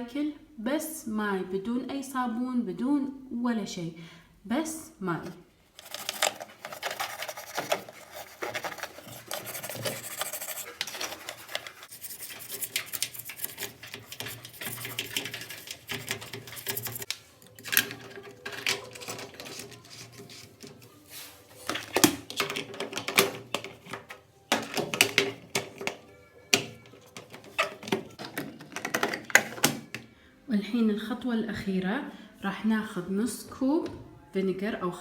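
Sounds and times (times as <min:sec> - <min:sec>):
background music: 0:15.3 - 0:35.0.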